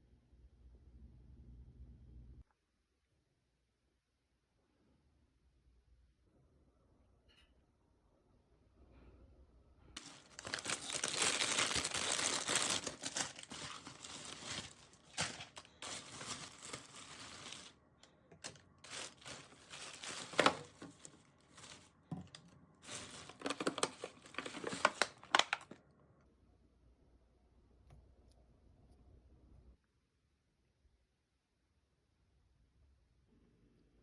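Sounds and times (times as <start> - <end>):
packaging crinkling and rustling: 10.0 - 25.8.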